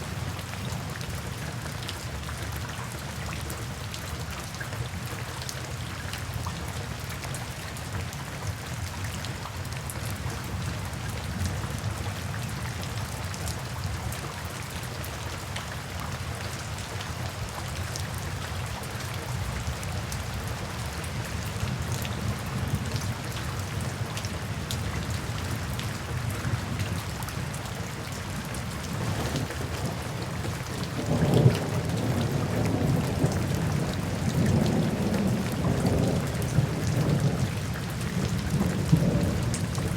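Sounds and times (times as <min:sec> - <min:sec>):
steady rain: 0:00.0 - 0:39.9
low rumble of thunder: 0:27.4 - 0:39.9.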